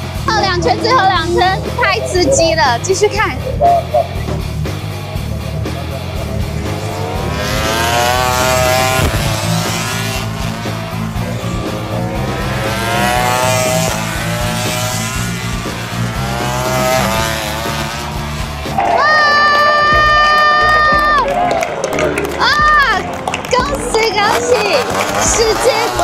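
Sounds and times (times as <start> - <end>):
racing motorcycles revving: 0.0 - 26.0.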